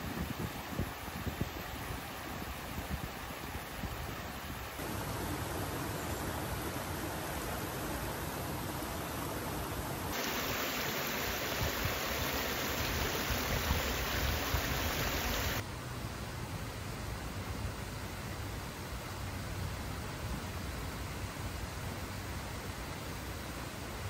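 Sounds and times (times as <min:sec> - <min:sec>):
steady rushing noise: 0:10.1 - 0:15.6.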